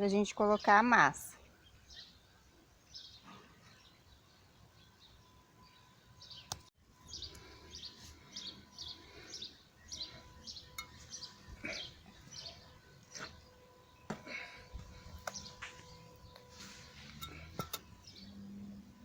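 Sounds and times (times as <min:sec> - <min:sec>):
bird chirping: 0:01.6 - 0:14.2, 0:14.9 - 0:18.8.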